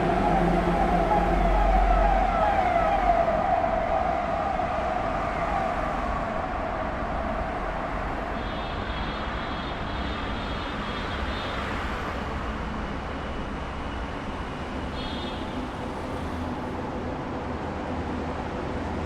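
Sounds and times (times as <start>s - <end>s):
wavering vehicle horn: 0.0s - 6.6s, 8.1s - 11.6s
traffic echoing in tunnel: 0.0s - 19.0s.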